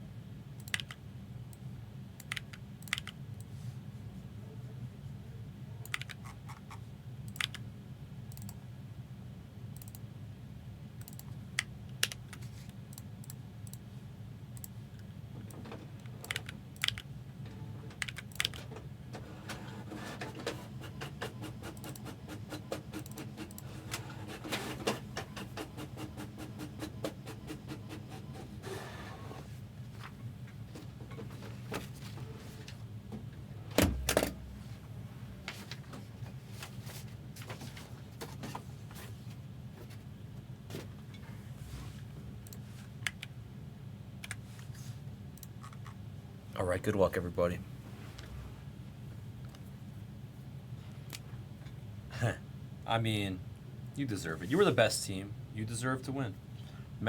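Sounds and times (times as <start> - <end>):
typing on computer keyboard: 0.6 - 1.0, 2.2 - 3.2, 5.8 - 6.7, 7.3 - 7.6, 16.0 - 17.1, 18.0 - 18.7, 20.8 - 28.4
steady low hum: 6.7 - 57.0.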